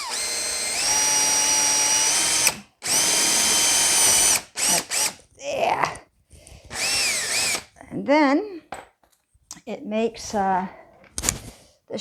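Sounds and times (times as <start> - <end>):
power drill motor whining: 0.0 - 5.3, 6.6 - 7.7.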